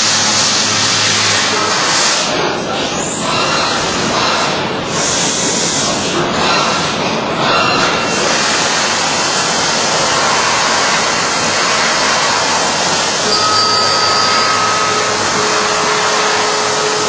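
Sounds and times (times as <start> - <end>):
machine rushing hiss: 8.1 - 17.0
faint steady whine: 13.2 - 17.0.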